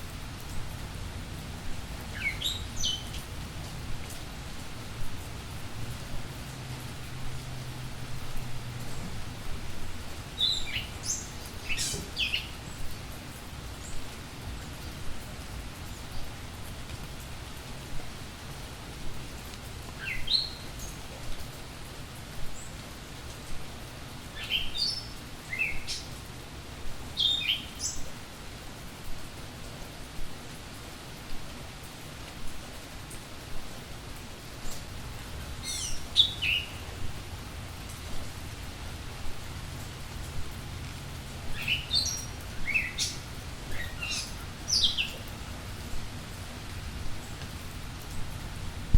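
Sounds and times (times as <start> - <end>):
rain falling: 0.0 - 48.9
songbird chirping: 2.1 - 3.2, 10.3 - 12.9, 35.6 - 36.9, 41.5 - 45.3.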